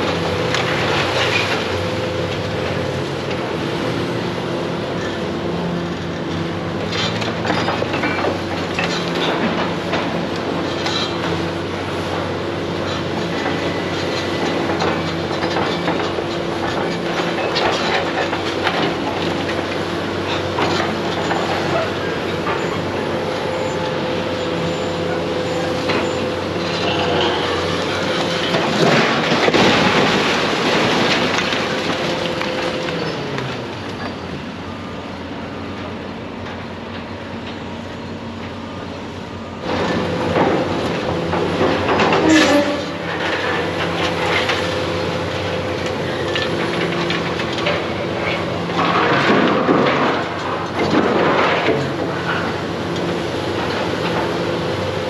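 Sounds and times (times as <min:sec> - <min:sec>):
diesel machinery engine: 0:00.0 - 0:55.0
debris grinding and scraping: 0:12.8 - 0:34.2.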